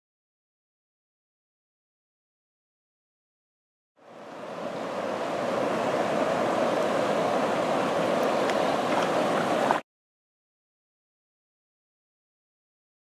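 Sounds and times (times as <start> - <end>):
river water rushing: 4.0 - 9.8.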